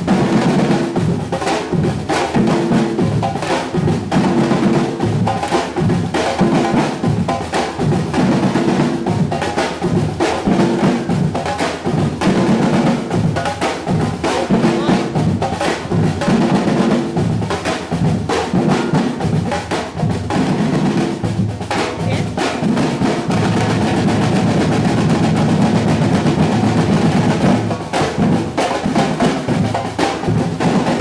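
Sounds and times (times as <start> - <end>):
snare and bass drums playing: 0.0 - 31.0.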